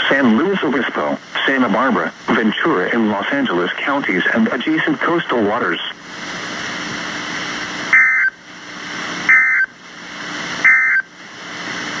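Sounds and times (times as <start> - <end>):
radio static hiss: 0.0 - 12.0
two-tone digital data bursts: 9.3 - 9.7, 10.7 - 11.0.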